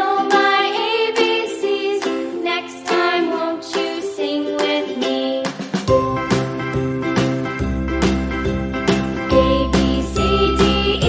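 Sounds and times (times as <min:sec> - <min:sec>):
plucked-string tune: 0:00.0 - 0:11.0
low bass: 0:05.9 - 0:11.0.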